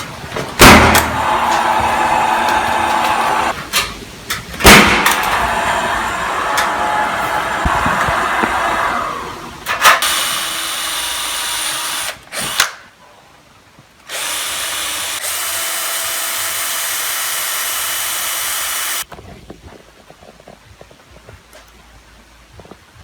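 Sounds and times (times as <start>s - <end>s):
power drill running: 0.6s - 3.6s, 4.6s - 12.8s, 14.1s - 19.0s.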